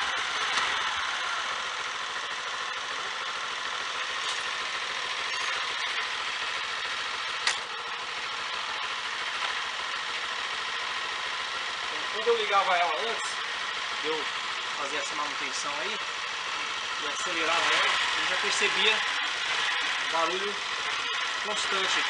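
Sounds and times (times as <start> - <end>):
motorcycle engine idling: 0.0 - 22.0
sharp click: 7.4 - 7.7.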